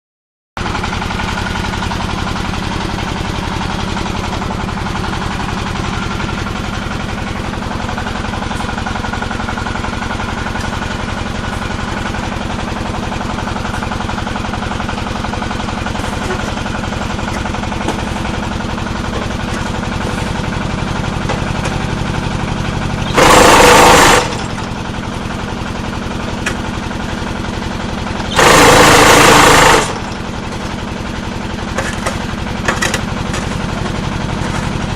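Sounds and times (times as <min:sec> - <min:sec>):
diesel engine chugging: 0:00.6 - 0:34.9
loud harsh bursts: 0:23.0 - 0:24.5, 0:28.3 - 0:30.1.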